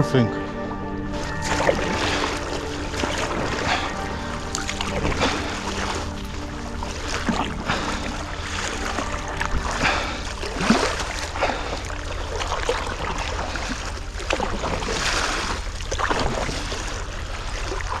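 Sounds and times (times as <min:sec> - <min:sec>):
paddle strokes and water splashing: 0:00.7 - 0:18.0.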